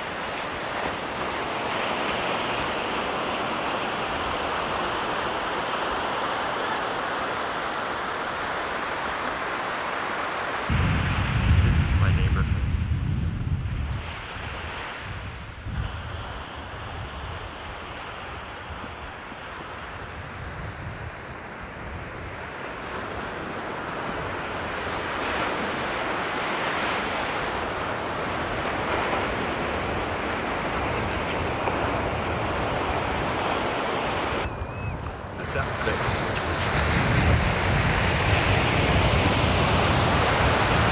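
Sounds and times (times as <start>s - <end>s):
ocean surf washing up: 0.0s - 40.9s
wind buffeting microphone: 10.7s - 40.9s.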